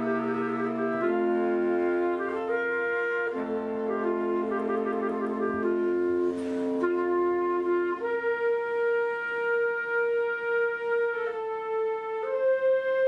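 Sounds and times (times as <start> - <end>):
wind band playing long notes: 0.0 - 13.0.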